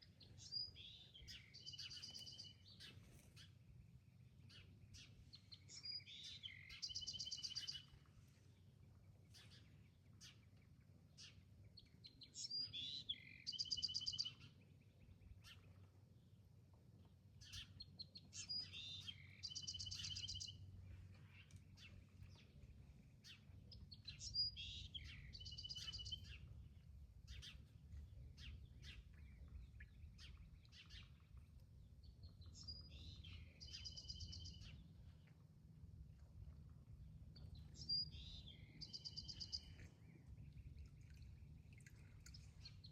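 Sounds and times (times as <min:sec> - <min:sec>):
songbird singing with trill: 0:00.0 - 0:03.6, 0:04.4 - 0:08.1, 0:09.3 - 0:15.9, 0:17.4 - 0:35.3, 0:37.3 - 0:41.0
low outdoor rumble: 0:14.3 - 0:42.9.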